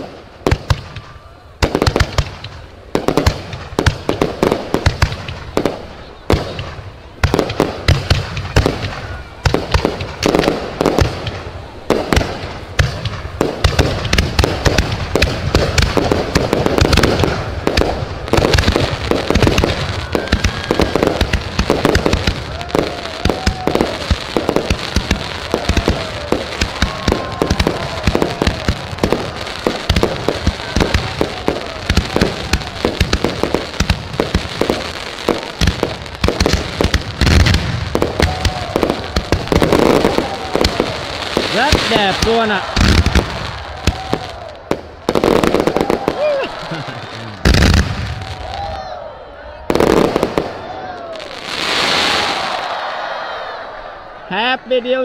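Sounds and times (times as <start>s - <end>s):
fireworks whistling: 0.0s - 48.6s, 49.6s - 52.8s
fireworks bangs and crackling: 0.0s - 53.6s.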